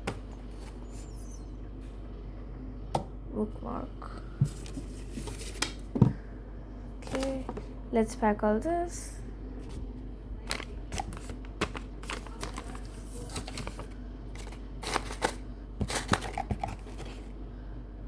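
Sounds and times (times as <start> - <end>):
small items packed into box: 10.4 - 17.3.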